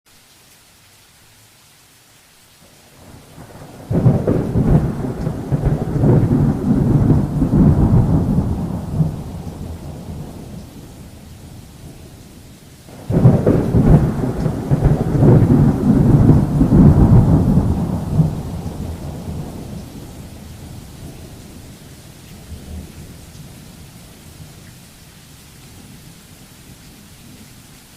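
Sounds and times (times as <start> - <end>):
rain hissing: 0.1 - 27.9
thunder rolling: 3.0 - 11.6, 12.9 - 21.2.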